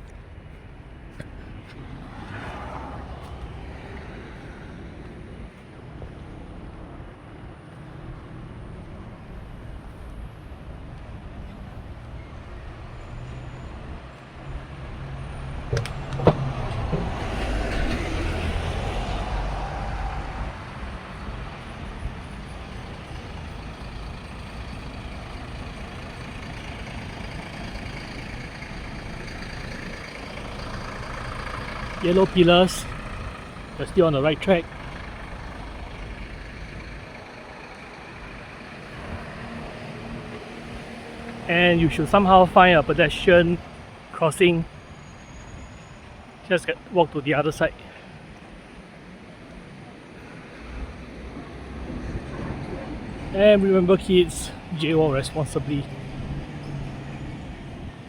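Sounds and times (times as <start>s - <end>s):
low traffic rumble: 0.0s - 58.0s
vehicle passing: 14.6s - 43.6s, 50.5s - 58.0s.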